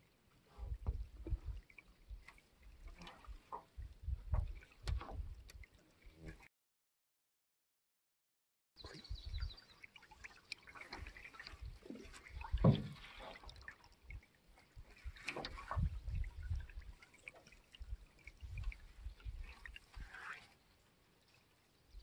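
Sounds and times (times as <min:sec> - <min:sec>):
water splashing and trickling: 0:00.0 - 0:06.5, 0:08.8 - 0:22.0
knocks and low thumps: 0:00.8 - 0:01.6, 0:03.8 - 0:05.4.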